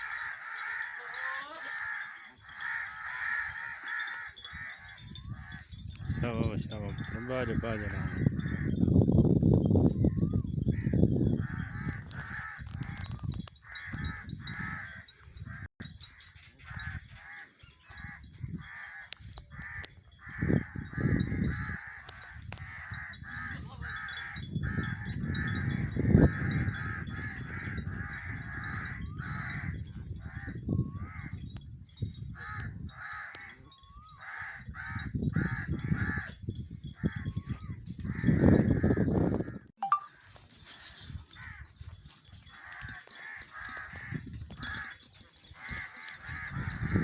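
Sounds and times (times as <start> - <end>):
birds calling: 0.0 - 8.8.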